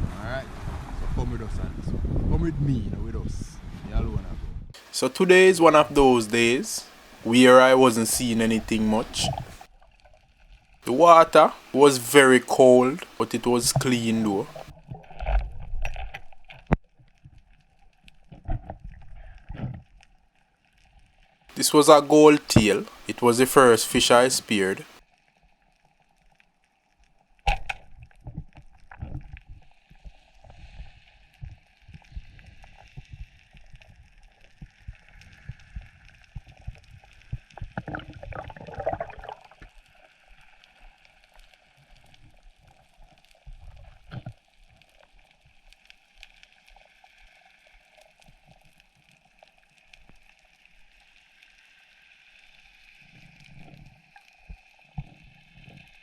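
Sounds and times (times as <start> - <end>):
faint steady hiss: 4.8 - 9.7, 10.8 - 16.7, 20.6 - 26.1
underwater gurgling: 4.8 - 20.2, 27.4 - 56.0.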